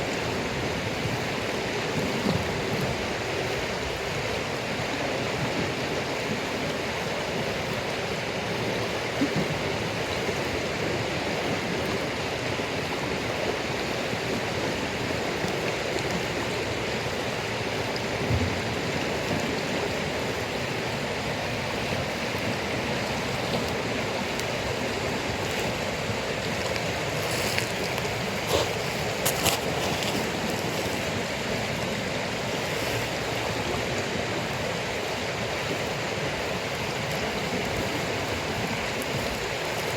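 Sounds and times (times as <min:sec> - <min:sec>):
running water rushing: 0:00.0 - 0:39.9.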